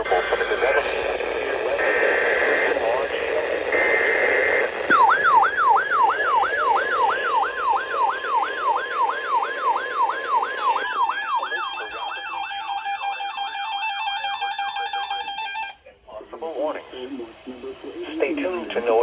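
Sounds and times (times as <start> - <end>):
steady tone: 0.0 - 13.8
downward sweeping siren tone: 4.9 - 14.2.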